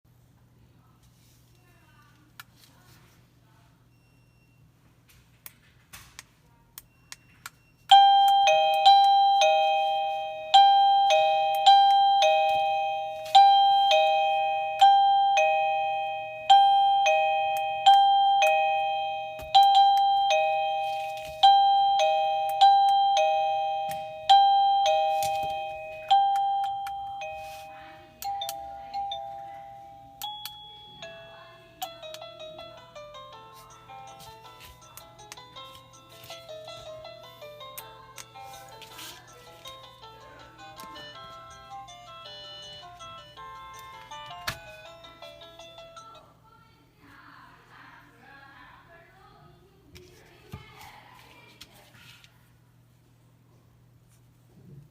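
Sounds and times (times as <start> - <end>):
doorbell chiming ding-dong: 7.9 - 35.3.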